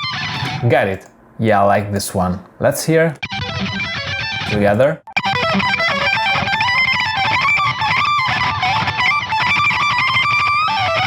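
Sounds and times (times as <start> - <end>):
distorted electric guitar solo: 0.0 - 0.7, 3.2 - 11.0.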